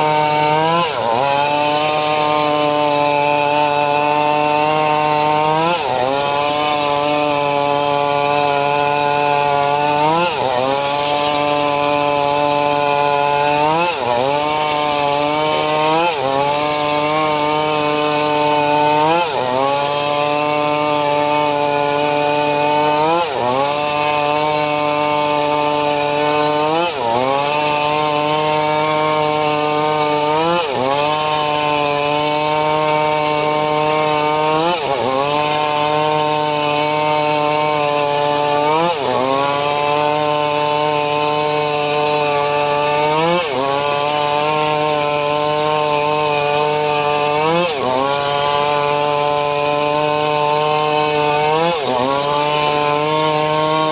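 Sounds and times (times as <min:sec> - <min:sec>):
sawmill blade cutting wood: 0:00.0 - 0:53.9.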